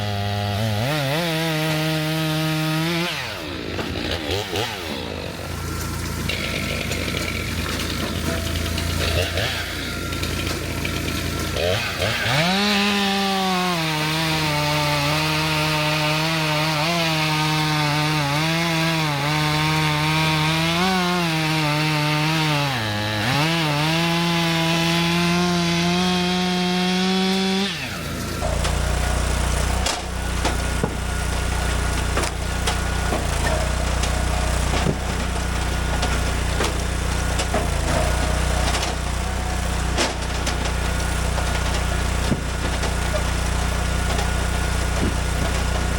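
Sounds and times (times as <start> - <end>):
chainsaw cutting log: 0.0 - 45.9
chainsaw idling: 0.0 - 45.9
sharp knocks: 32.0 - 39.1.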